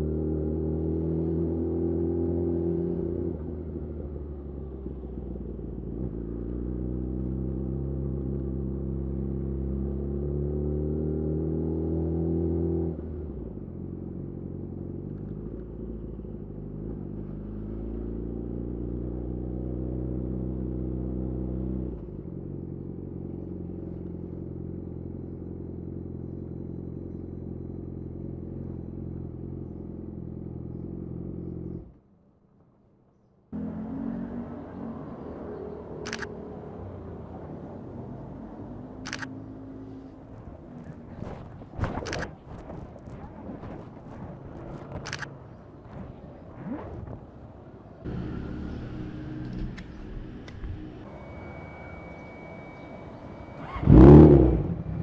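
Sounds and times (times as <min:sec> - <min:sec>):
motorcycle engine revving: 0:33.6 - 0:41.4, 0:46.5 - 0:55.0.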